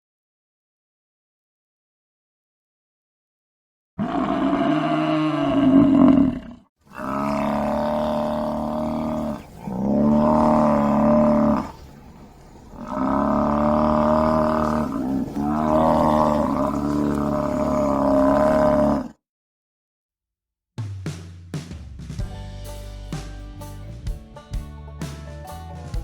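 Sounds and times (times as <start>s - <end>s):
buffalo bellowing: 4.0s - 19.1s.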